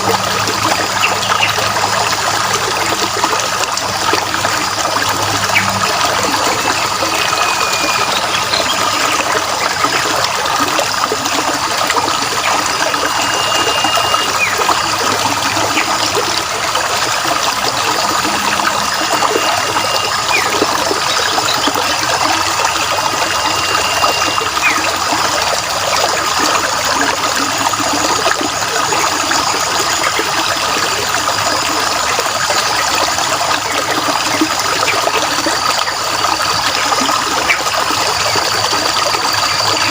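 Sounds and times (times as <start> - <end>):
water trickling: 0.0 - 39.9
bird whistling: 5.4 - 9.2, 12.8 - 14.7, 18.3 - 21.8, 23.4 - 25.0.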